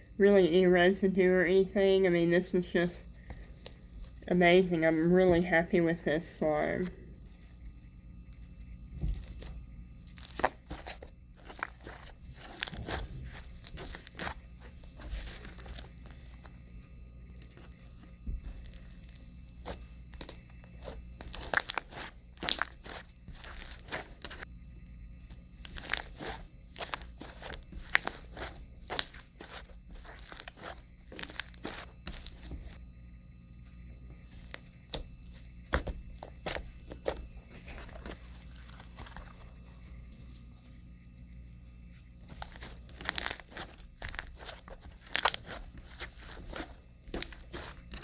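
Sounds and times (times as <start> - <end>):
slime squished by hand: 10.0 - 16.4, 17.5 - 24.4, 25.6 - 32.8, 42.3 - 48.0.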